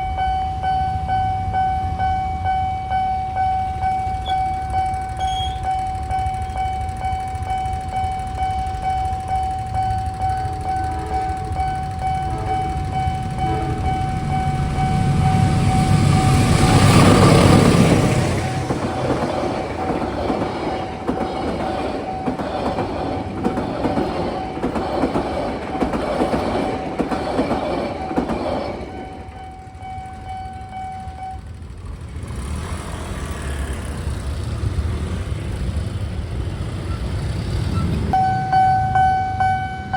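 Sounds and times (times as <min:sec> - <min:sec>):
level crossing alarm high tone: 0:00.0 - 0:18.8, 0:38.2 - 0:39.9
train wheels clattering over rails: 0:03.8 - 0:30.0.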